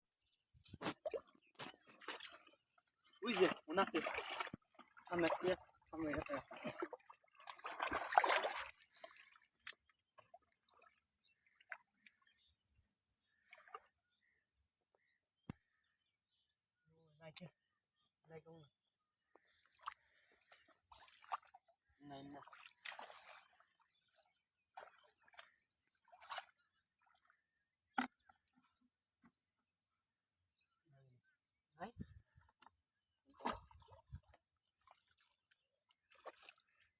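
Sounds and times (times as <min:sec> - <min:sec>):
pond water splashing: 0:00.6 - 0:14.4, 0:19.2 - 0:30.2, 0:31.7 - 0:36.9
water drips and small splashes: 0:00.6 - 0:14.4, 0:19.3 - 0:29.4, 0:32.3 - 0:36.9.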